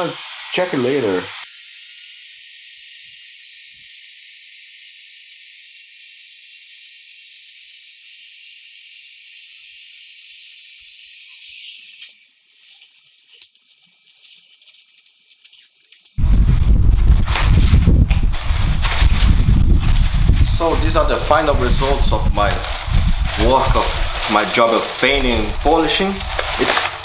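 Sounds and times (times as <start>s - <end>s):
steady high hiss: 0.0s - 1.5s, 17.2s - 27.0s.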